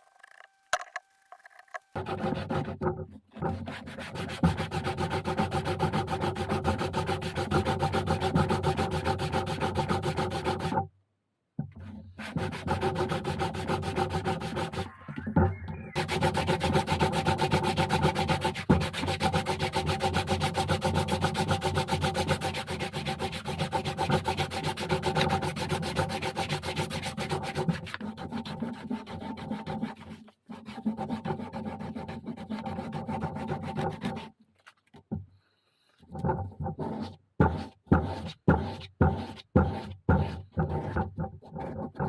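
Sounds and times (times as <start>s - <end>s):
sanding leather edges: 2.0s - 10.8s, 11.9s - 14.9s, 16.0s - 34.4s.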